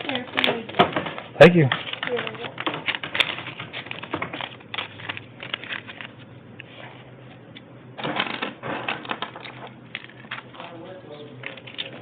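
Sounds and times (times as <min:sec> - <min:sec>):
small items clicking: 0:01.5 - 0:06.1, 0:11.4 - 0:12.0.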